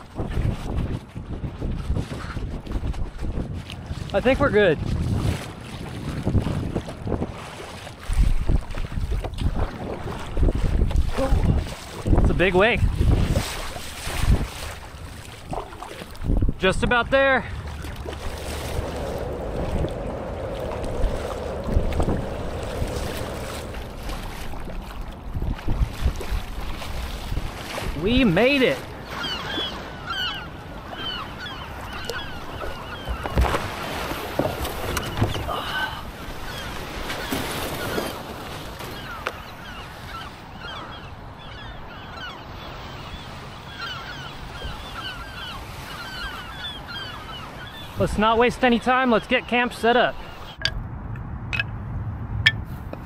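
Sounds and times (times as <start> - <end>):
knocks and splashes: 0.0 - 28.1, 31.8 - 39.4
wind buffeting microphone: 0.0 - 42.4
kayak paddling through choppy water: 0.0 - 50.7
waves on the shore: 0.0 - 53.0
flock of birds chirping: 29.0 - 33.6, 38.8 - 50.6.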